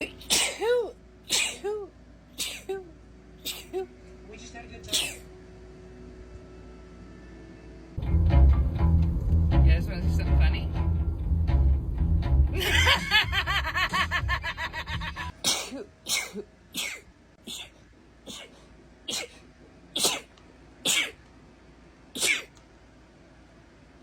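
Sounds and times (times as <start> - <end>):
woman sneezing rapidly: 0.1 - 2.8, 4.9 - 5.3, 15.4 - 19.4, 20.0 - 20.3, 20.9 - 21.2, 22.2 - 22.5
plucked-string music: 8.0 - 13.4.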